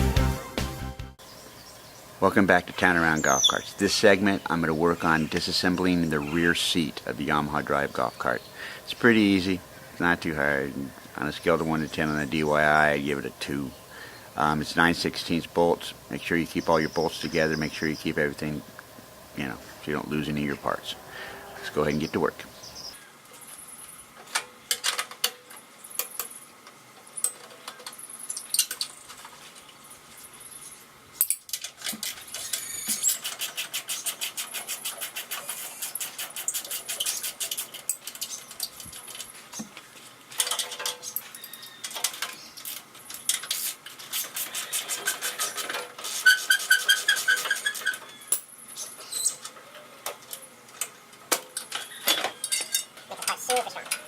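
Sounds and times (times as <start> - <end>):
squeak: 32.3 - 34.1, 43.6 - 49.4.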